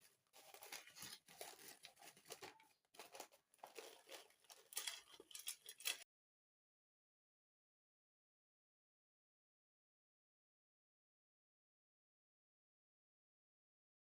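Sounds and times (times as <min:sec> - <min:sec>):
faint crinkling and rustling: 0:00.0 - 0:06.0.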